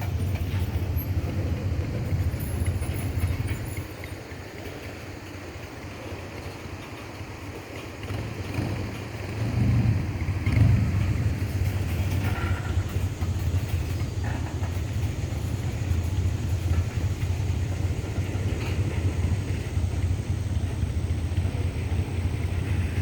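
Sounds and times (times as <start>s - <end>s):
freight train rumbling past: 0.0s - 23.0s.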